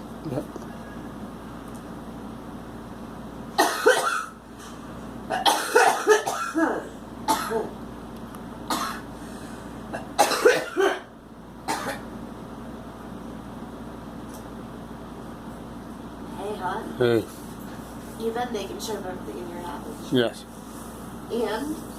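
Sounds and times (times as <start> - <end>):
girl coughing: 3.6 - 4.4, 5.3 - 7.8, 8.7 - 9.1, 9.9 - 11.1, 11.7 - 12.1.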